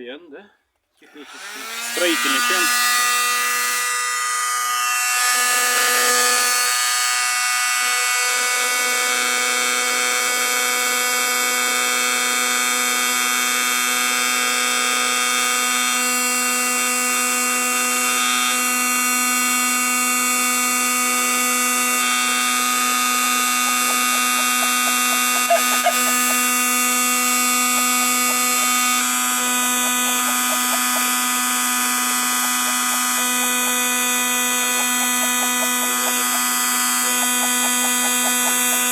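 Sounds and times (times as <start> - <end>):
heat gun fan whine: 1.0 - 38.9.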